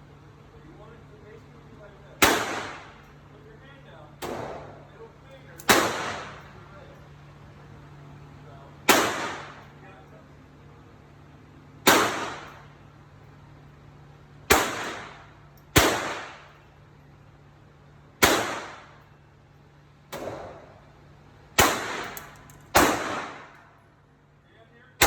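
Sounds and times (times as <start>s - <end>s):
gunshots with echo: 2.2s - 3.0s, 5.7s - 6.4s, 8.9s - 9.6s, 11.9s - 12.5s, 22.8s - 23.5s.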